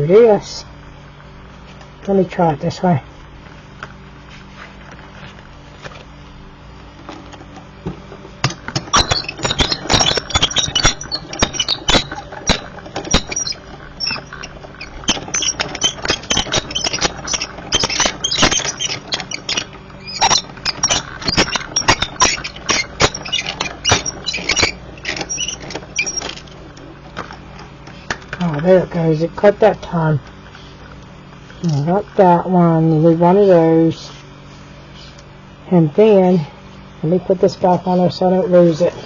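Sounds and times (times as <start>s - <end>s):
die-cutting machine crackling and clicking: 8.4s - 28.8s.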